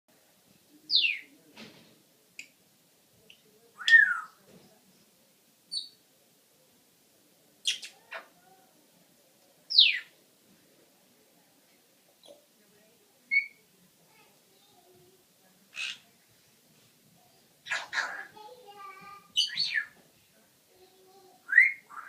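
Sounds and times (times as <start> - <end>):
parrot whistling: 3.8 - 4.3, 13.3 - 13.6, 21.5 - 22.0
parrot chirps and clicks: 7.7 - 8.0
parrot squawk: 15.8 - 16.0, 17.6 - 18.4.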